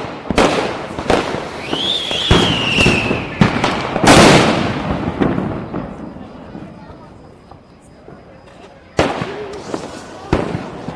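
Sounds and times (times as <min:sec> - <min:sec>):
firework whistle: 0:00.0 - 0:04.8
firecrackers bursting: 0:00.0 - 0:10.9.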